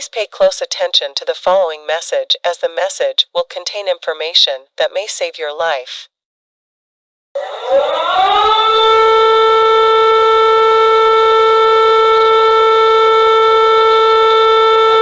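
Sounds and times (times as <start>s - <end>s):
civil defense siren winding up: 7.4s - 15.0s.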